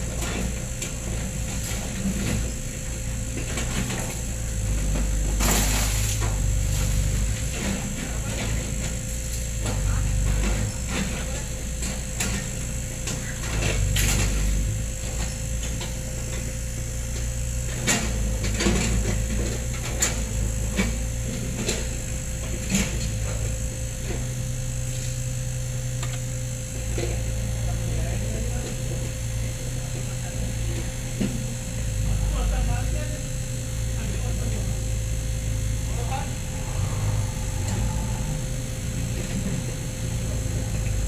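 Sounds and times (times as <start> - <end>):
excavator diesel engine running: 0.0 - 41.0.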